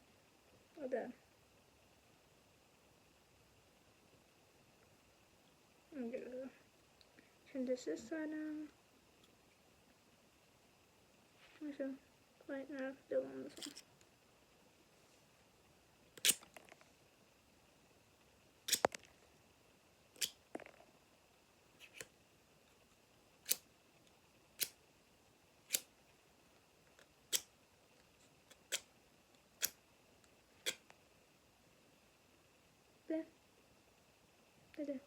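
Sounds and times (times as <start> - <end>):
scissors snipping: 16.2 - 16.5, 18.7 - 19.0, 20.2 - 20.4, 23.4 - 23.6, 25.7 - 25.9, 28.5 - 28.9, 30.6 - 30.9.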